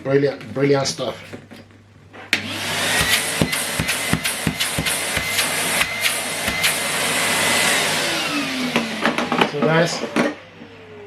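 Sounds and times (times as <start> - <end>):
vacuum cleaner running: 2.3 - 11.0
sharp knocks: 3.0 - 6.8.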